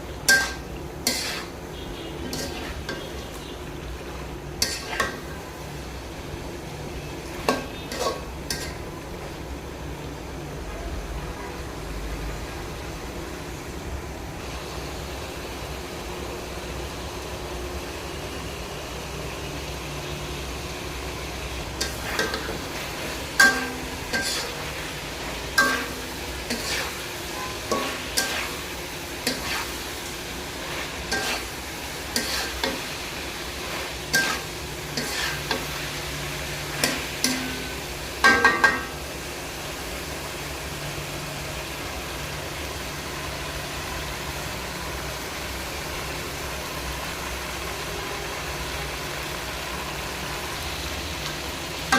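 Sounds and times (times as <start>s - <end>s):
curry sizzling in a pan: 0.0s - 10.6s, 14.4s - 51.9s
spoon knocking and scraping pan: 23.4s - 24.6s, 36.8s - 39.0s.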